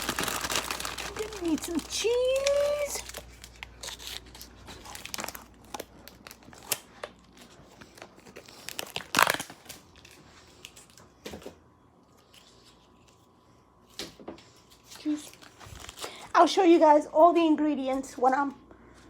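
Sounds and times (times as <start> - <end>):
plastic packaging crinkling: 0.0 - 11.1, 14.7 - 16.4.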